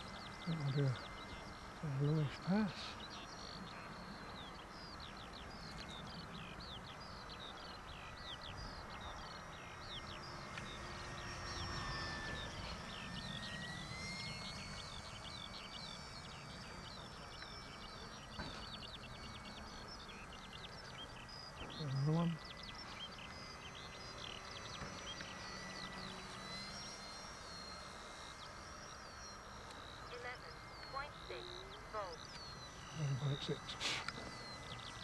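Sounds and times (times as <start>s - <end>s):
birds chirping: 0.0s - 35.0s
model plane motor whine: 0.0s - 35.0s.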